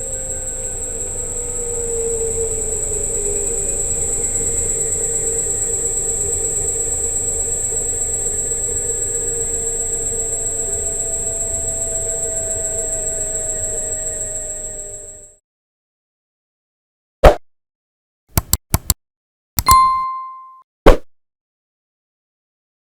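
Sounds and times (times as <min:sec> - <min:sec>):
electric scooter motor whine: 0:00.0 - 0:15.4.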